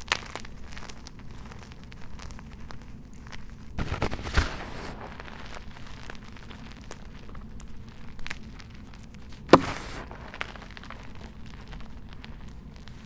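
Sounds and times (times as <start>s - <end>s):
chalk crunching by hand: 3.8s - 6.4s, 9.5s - 13.0s.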